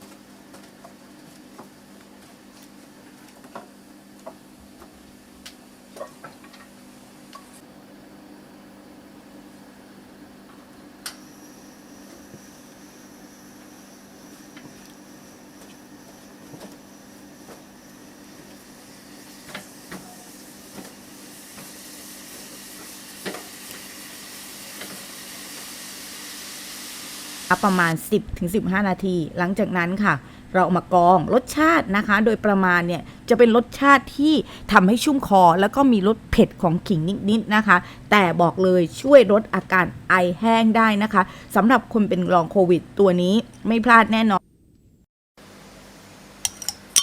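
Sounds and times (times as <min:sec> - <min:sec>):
syrup simmering with sizzling hiss: 0:11.2 - 0:27.5.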